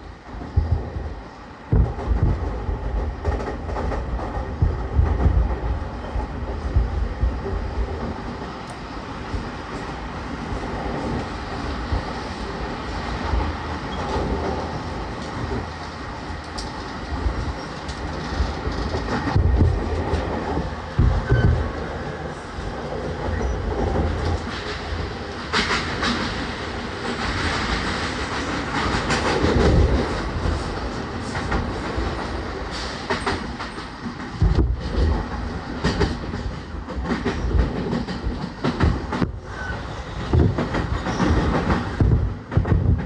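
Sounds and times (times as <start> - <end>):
train wheels and motors rumbling: 0.0 - 43.0
wheels thumping over rail joints: 0.5 - 8.2, 16.6 - 21.9, 40.2 - 43.0.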